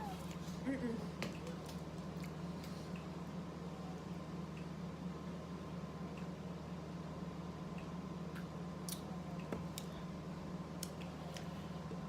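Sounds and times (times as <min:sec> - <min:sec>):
low electrical hum: 0:00.0 - 0:12.0
wet mouth clicks and smacks: 0:08.3 - 0:09.9.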